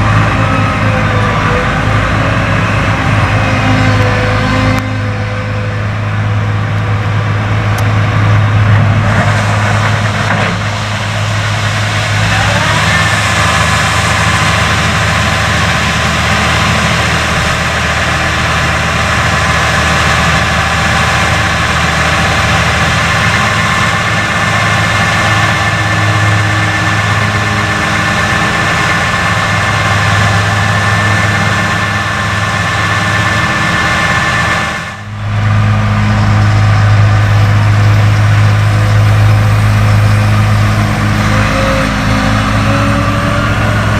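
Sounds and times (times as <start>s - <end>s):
diesel machinery running: 0.0s - 43.9s
high machine whine: 10.3s - 43.9s.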